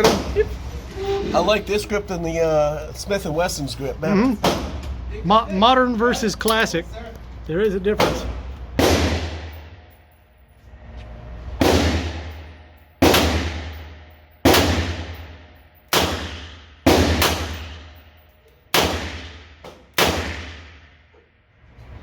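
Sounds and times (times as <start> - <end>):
handgun shots echoing indoors: 8.0 - 10.1, 11.6 - 21.1.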